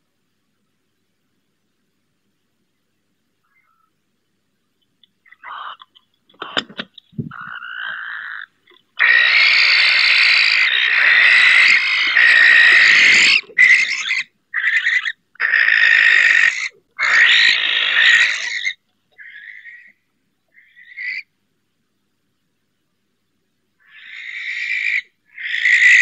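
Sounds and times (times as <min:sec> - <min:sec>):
barn owls screeching: 0:05.2 - 0:06.6, 0:07.2 - 0:21.3, 0:23.8 - 0:26.0.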